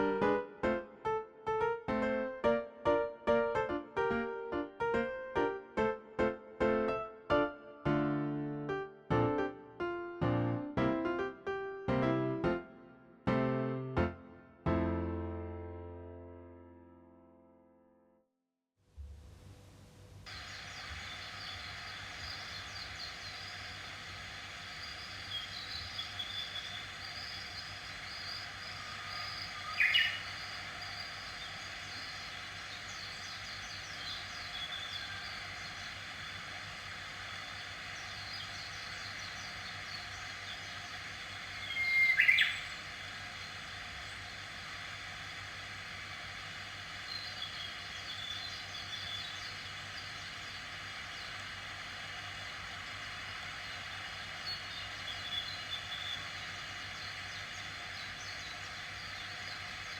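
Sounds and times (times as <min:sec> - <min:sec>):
steady background hiss: 0:00.0 - 0:12.8, 0:18.9 - 0:59.9
birds chirping and calling: 0:20.3 - 0:45.6, 0:47.0 - 0:51.5, 0:53.1 - 0:59.9
short loud bird calls: 0:24.7 - 0:36.5, 0:37.3 - 0:43.6.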